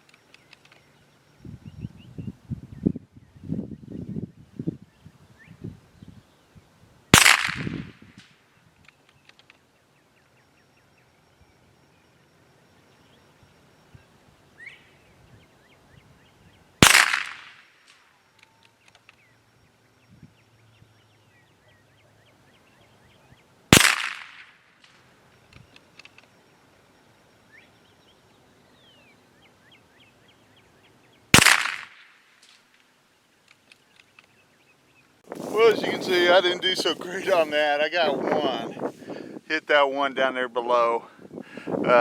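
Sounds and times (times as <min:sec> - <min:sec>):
rifle shots: 0:07.2 - 0:08.0, 0:16.8 - 0:17.7, 0:23.7 - 0:24.6, 0:31.3 - 0:32.2.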